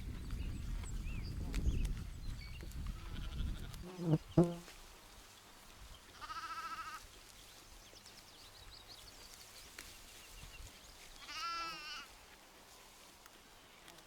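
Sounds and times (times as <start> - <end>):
sheep bleating: 6.2 - 7.0, 11.2 - 12.1.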